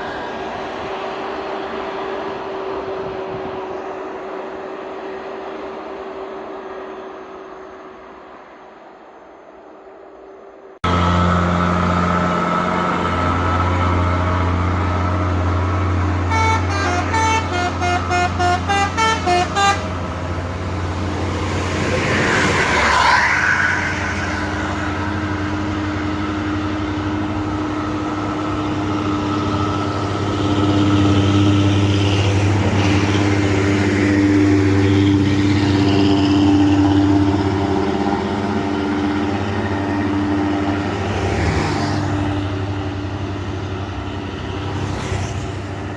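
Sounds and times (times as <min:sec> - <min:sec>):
bus diesel engines labouring: 0:00.0 - 0:45.9
bus passing close: 0:00.0 - 0:45.9
multi-tone bus horn tune: 0:16.2 - 0:20.4.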